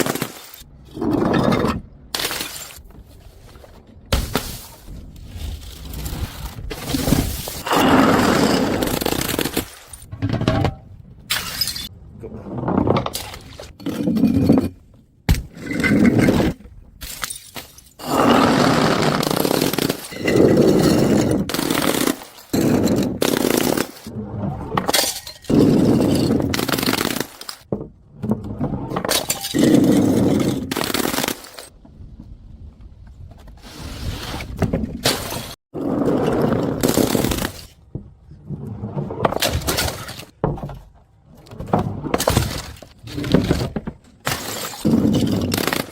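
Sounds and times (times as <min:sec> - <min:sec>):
glass bottles shattering: 0:00.0 - 0:02.8, 0:11.3 - 0:11.9, 0:15.5 - 0:18.4, 0:19.1 - 0:24.1, 0:24.9 - 0:27.6, 0:29.1 - 0:31.7, 0:44.2 - 0:45.9.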